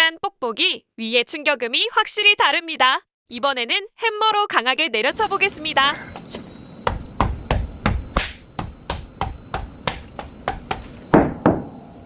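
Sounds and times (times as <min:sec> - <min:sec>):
hammer knocking: 0:06.0 - 0:11.8.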